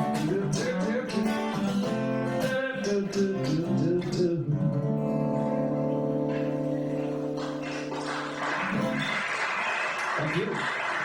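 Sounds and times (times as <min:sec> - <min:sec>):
acoustic guitar playing: 0:00.0 - 0:09.6.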